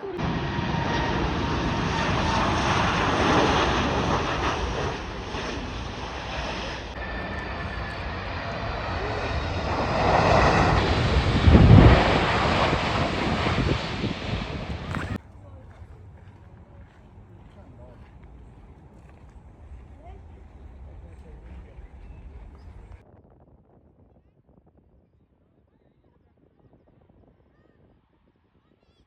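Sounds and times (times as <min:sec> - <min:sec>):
jet airplane passing overhead: 0:00.0 - 0:23.0.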